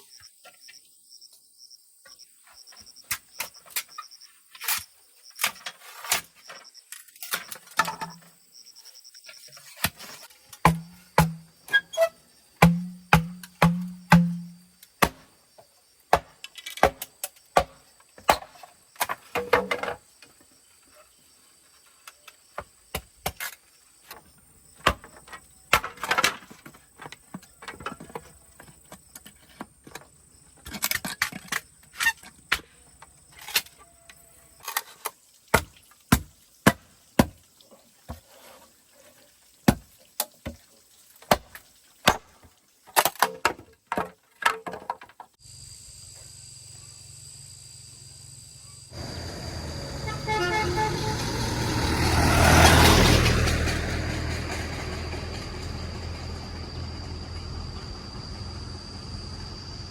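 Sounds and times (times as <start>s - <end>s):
sharp knocks and clacks: 10.7s - 11.6s, 12.6s - 15.2s.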